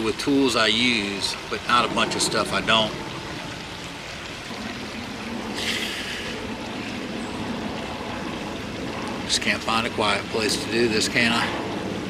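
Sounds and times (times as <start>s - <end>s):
people talking: 0.0s - 3.0s, 9.3s - 11.6s.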